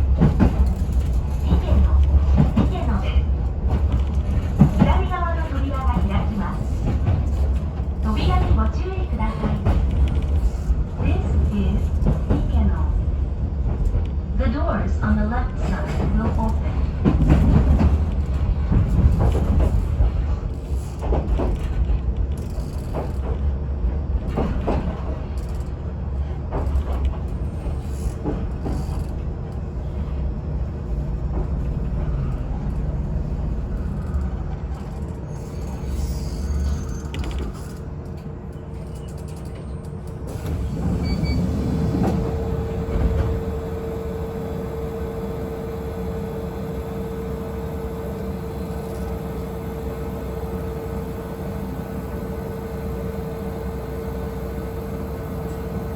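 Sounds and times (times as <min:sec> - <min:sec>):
standing train humming: 0:00.0 - 0:36.0, 0:37.2 - 0:55.9
train wheels clicking on rails: 0:00.0 - 0:55.9
electric train slowing to a stop: 0:15.1 - 0:55.9.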